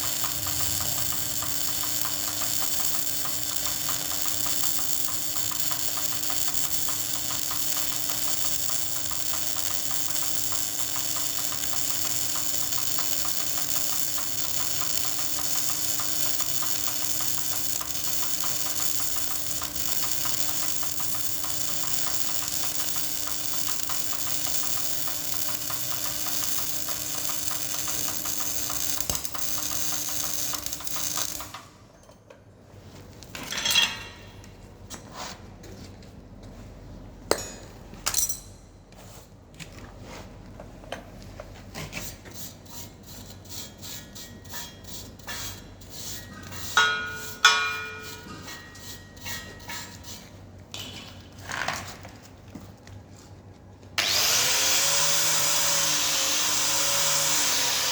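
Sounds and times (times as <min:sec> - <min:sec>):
welding arc crackling: 0:00.0 - 0:31.7, 0:54.0 - 0:57.9
sharp metallic clink: 0:37.3 - 0:38.8, 0:46.8 - 0:50.0.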